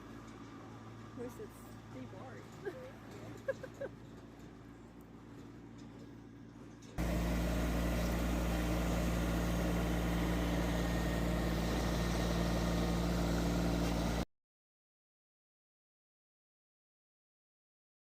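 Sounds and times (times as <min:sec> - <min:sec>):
engine idling: 0:00.0 - 0:14.2.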